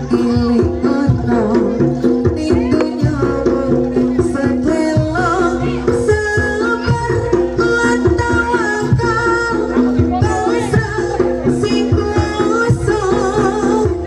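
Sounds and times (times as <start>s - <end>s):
drum strokes: 0.0s - 14.0s.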